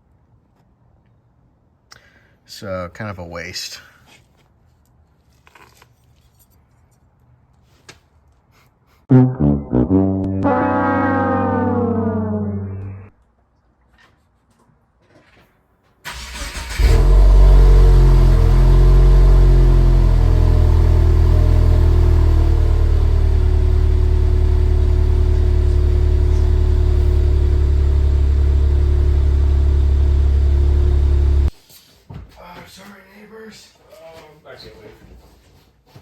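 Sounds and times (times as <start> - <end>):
car engine cranking: 16.1 - 19.3
car engine idling: 16.8 - 31.5.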